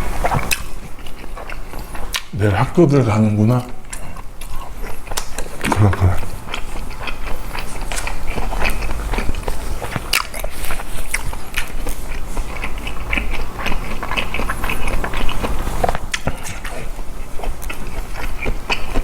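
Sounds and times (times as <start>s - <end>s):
person chewing food: 0.0s - 19.0s.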